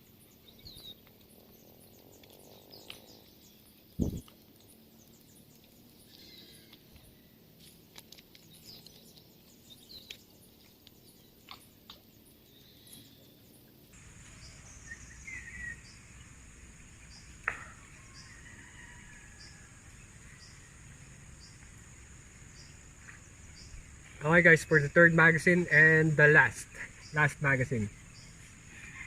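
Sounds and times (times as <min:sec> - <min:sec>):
bird chirp: 0:00.0 - 0:29.0
high insect drone: 0:00.0 - 0:29.0
small clicks: 0:04.2 - 0:12.1.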